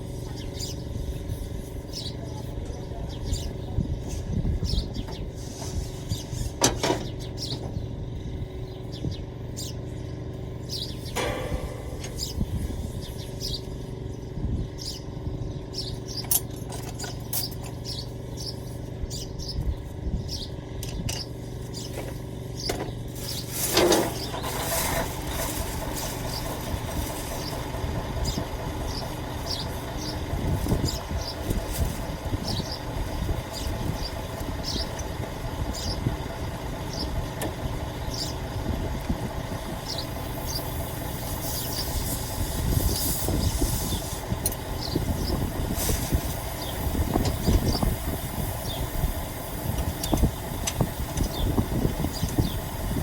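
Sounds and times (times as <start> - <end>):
birds chirping: 0.0 - 53.0
engine idling: 0.0 - 53.0
metallic knocks: 11.1 - 13.2.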